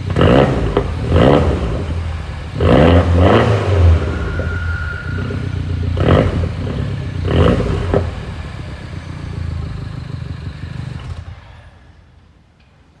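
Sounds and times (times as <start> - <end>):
car engine revving: 0.0 - 11.5
exhaust crack: 0.0 - 12.2.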